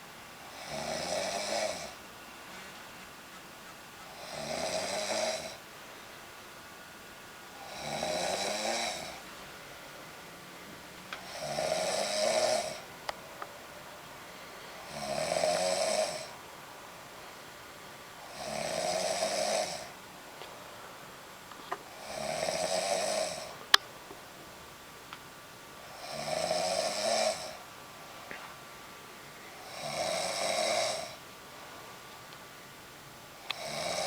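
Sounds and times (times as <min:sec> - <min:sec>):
woman snoring: 0:00.4 - 0:02.0, 0:04.1 - 0:05.6, 0:07.6 - 0:09.2, 0:11.2 - 0:12.9, 0:14.8 - 0:16.4, 0:18.3 - 0:20.0, 0:21.9 - 0:23.6, 0:25.9 - 0:27.6, 0:29.6 - 0:31.2, 0:33.5 - 0:34.0.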